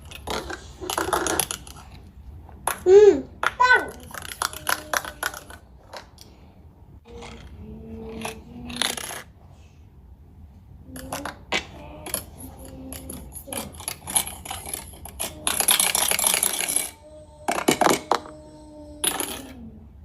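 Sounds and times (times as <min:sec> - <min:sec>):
small hard objects clattering: 0:00.0 - 0:02.0.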